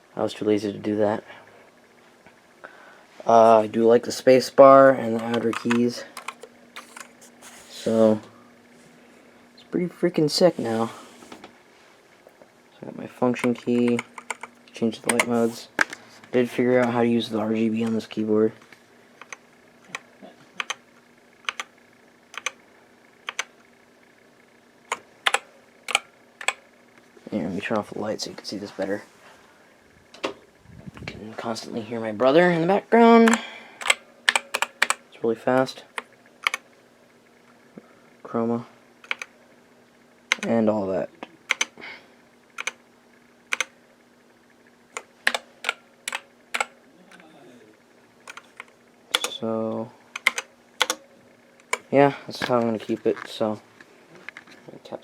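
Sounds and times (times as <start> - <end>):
faint steady hum: 0.0 - 55.0
keyboard keys clicking: 5.1 - 7.1, 13.4 - 14.5, 20.6 - 20.8, 21.5 - 21.7, 22.4 - 22.6, 23.3 - 23.5, 24.9 - 26.6, 33.3 - 35.0, 36.4 - 36.6, 39.0 - 39.3, 40.3 - 40.5, 41.5 - 41.8, 42.6 - 42.8, 43.5 - 43.7, 45.0 - 46.7, 48.3 - 49.4, 50.2 - 51.0.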